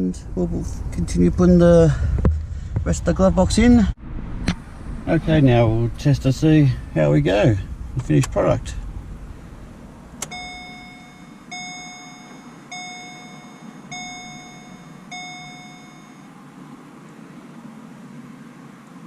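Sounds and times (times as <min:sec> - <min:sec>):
car dashboard warning chime dinging: 0:10.2 - 0:16.4.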